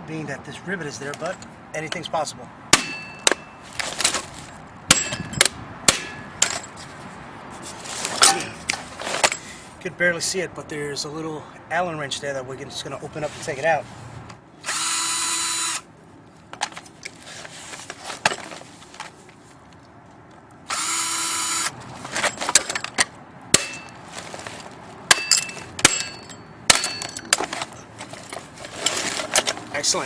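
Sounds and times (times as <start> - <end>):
power drill whirring: 14.6 - 15.9, 20.7 - 21.8.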